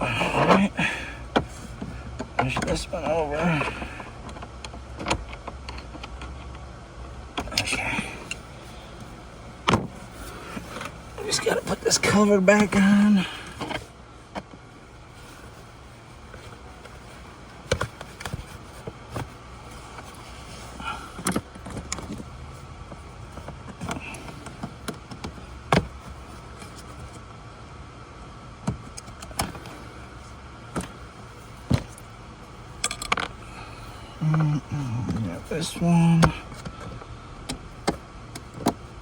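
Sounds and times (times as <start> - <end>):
steady low hum: 0.0 - 39.0.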